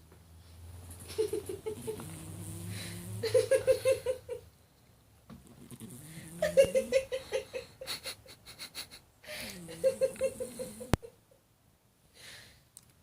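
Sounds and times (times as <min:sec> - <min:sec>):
cat snoring: 0:01.1 - 0:04.0, 0:05.4 - 0:07.1, 0:09.4 - 0:11.0
faint breath: 0:02.3 - 0:03.2, 0:09.2 - 0:09.8, 0:12.1 - 0:12.7.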